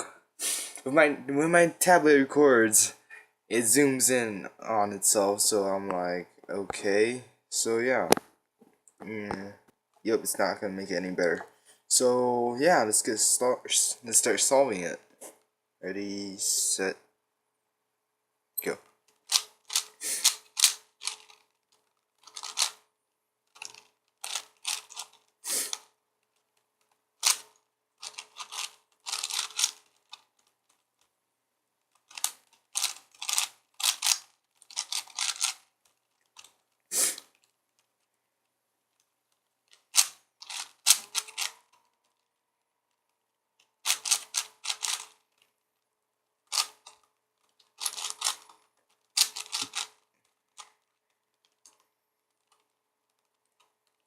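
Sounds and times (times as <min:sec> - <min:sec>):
puzzle cube plastic clacking: 0:18.9 - 0:22.9, 0:23.5 - 0:31.1, 0:31.8 - 0:38.1, 0:39.7 - 0:45.6, 0:46.4 - 0:54.0.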